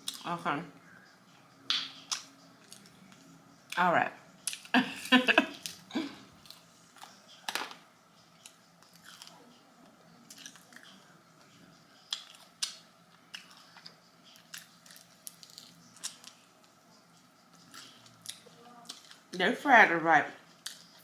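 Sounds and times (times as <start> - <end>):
chewing crispy chicken: 8.4 - 9.6, 10.2 - 11.2, 12.0 - 16.7, 17.5 - 19.3.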